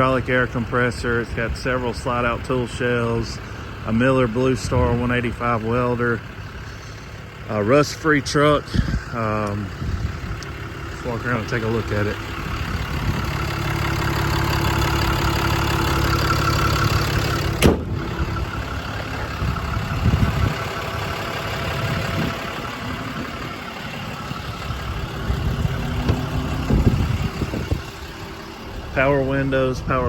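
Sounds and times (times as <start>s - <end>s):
diesel truck engine idling: 0.0s - 30.0s
soft knocks: 25.9s - 26.8s.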